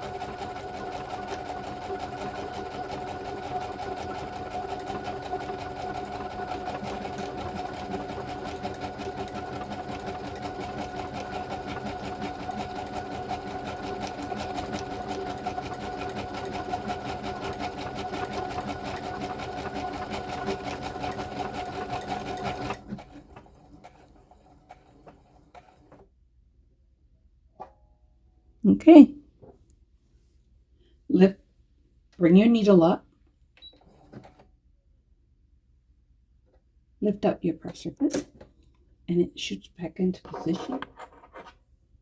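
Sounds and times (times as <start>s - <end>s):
sewing machine stitching: 0.0s - 26.0s, 33.6s - 34.5s, 40.2s - 41.5s.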